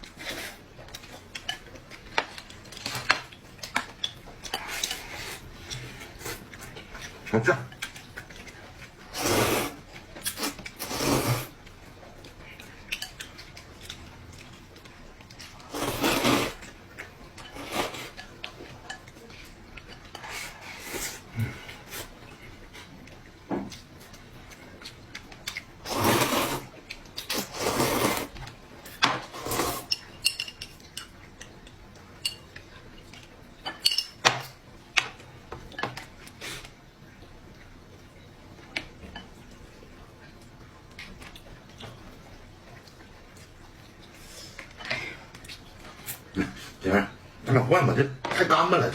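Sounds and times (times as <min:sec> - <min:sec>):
noisy eating of noodles: 0:00.0 - 0:30.2.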